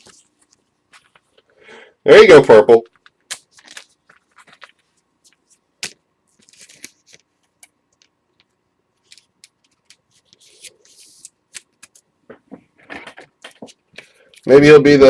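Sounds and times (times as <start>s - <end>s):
cards sliding and rustling: 3.0s - 7.3s, 9.0s - 12.0s.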